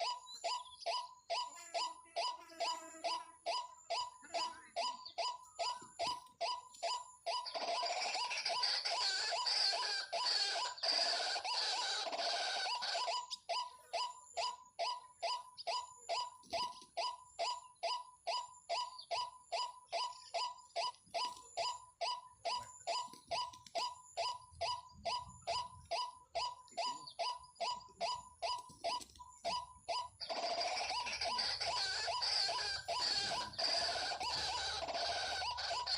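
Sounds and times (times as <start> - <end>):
waterhen calling: 30.2 - 35.9.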